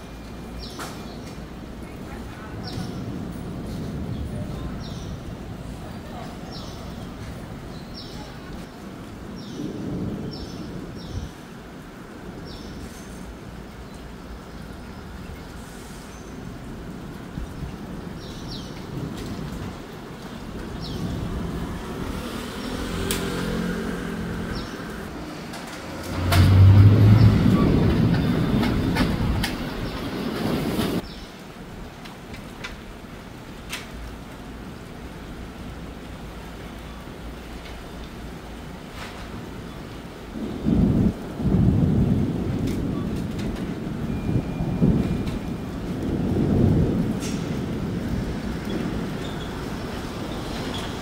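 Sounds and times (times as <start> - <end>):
thunder rumbling: 0.0 - 36.6, 37.2 - 51.0
vehicle engine passing: 21.8 - 28.9
loud low rumble: 26.0 - 29.9.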